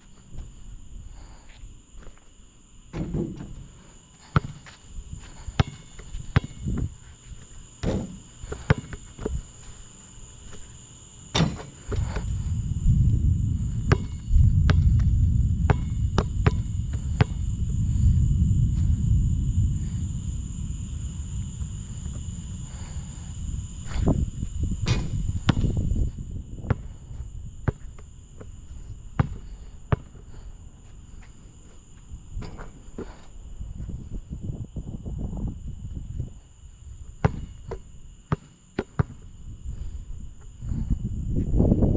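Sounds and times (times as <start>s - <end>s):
high insect chirring: 0.0s - 41.9s
high-pitched buzz: 2.8s - 30.1s
basketball bouncing: 5.5s - 6.9s, 7.8s - 9.4s, 13.8s - 15.1s, 15.7s - 17.4s, 29.2s - 30.1s, 37.2s - 39.2s
low rumble: 12.2s - 27.6s.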